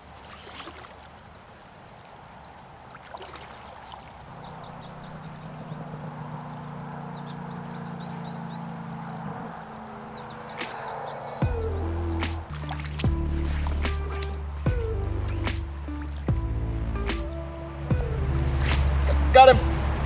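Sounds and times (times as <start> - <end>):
stream water flowing: 0.0 - 20.0
low steady hum: 11.4 - 20.0.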